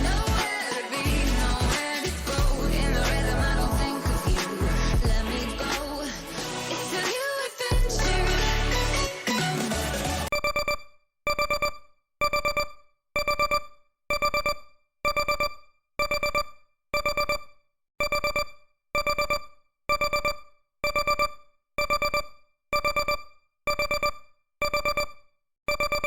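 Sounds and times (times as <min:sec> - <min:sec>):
timer alarm beeping: 0:10.3 - 0:26.0.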